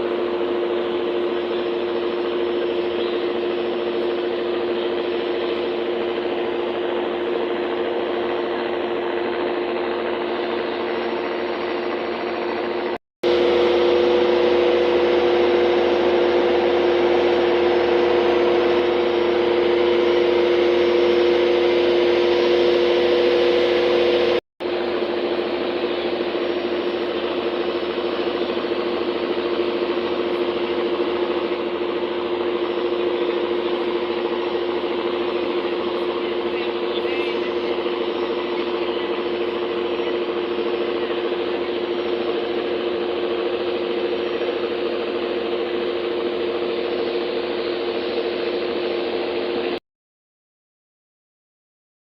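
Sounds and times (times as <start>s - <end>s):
engine drone with two-note hum: 0.0s - 49.8s.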